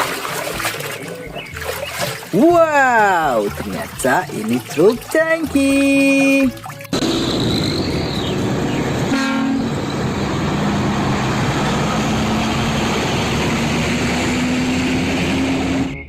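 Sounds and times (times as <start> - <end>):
heavy vehicle running: 6.9 - 16.0
air horn: 9.1 - 9.7.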